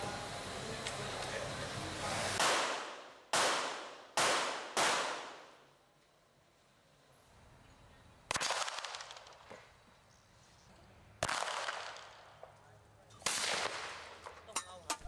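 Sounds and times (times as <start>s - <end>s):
gunshots ringing out: 2.4s - 5.6s, 8.3s - 9.3s, 11.2s - 12.2s, 13.2s - 14.3s.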